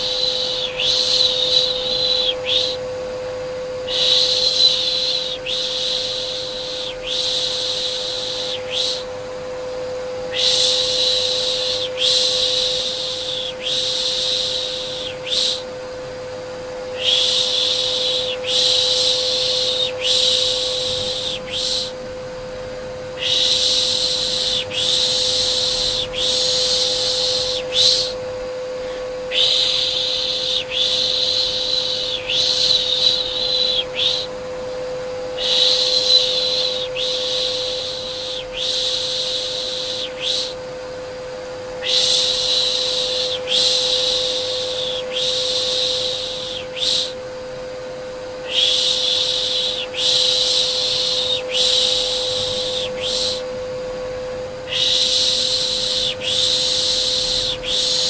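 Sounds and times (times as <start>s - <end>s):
vacuum cleaner humming: 0.0s - 58.0s
person shushing: 10.3s - 15.7s, 17.0s - 22.0s, 28.8s - 34.3s, 48.5s - 53.4s.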